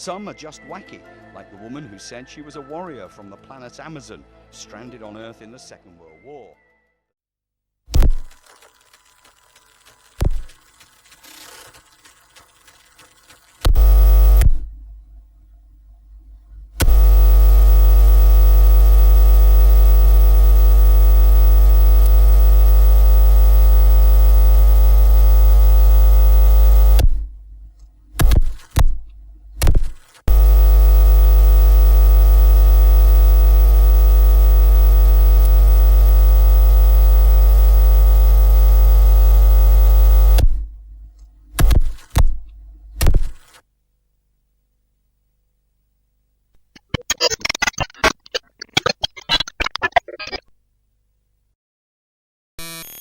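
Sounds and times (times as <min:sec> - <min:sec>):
electrical mains hum: 0:08.0 - 0:43.3.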